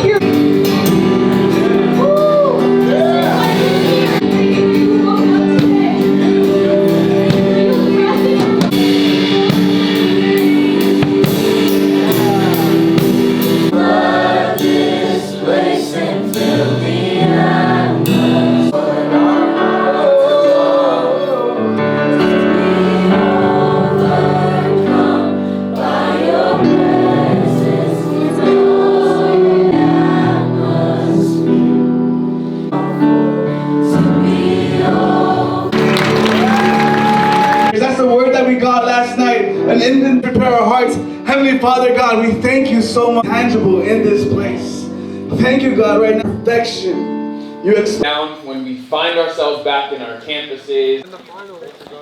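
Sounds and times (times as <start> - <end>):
group of voices singing: 0.8 - 37.7
sustained music: 32.9 - 37.8.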